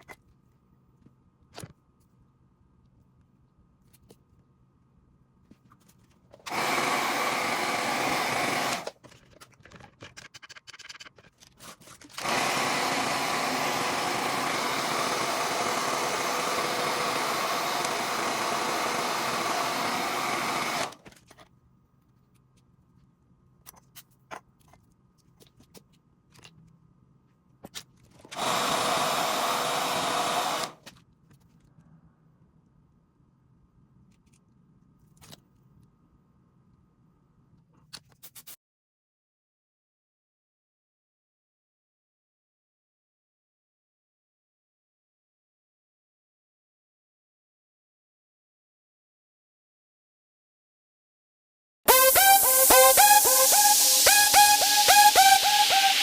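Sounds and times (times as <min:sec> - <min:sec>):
hair dryer blowing: 0:06.5 - 0:08.9, 0:12.2 - 0:21.0, 0:28.4 - 0:30.8, 0:51.9 - 0:56.0.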